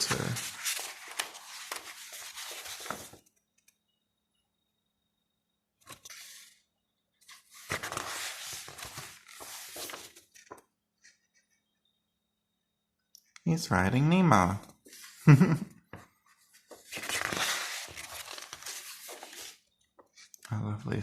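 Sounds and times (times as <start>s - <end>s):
paper pages rustling: 0.0s - 3.3s, 5.9s - 6.6s, 7.2s - 10.6s, 14.8s - 20.3s.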